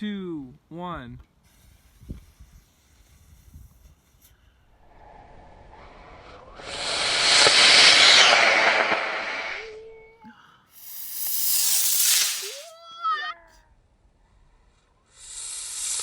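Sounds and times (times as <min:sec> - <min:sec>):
rushing hiss: 0:06.0 - 0:09.7, 0:10.8 - 0:12.7, 0:15.2 - 0:16.0
rocket motor hissing: 0:06.4 - 0:09.7, 0:10.8 - 0:12.7, 0:15.2 - 0:16.0.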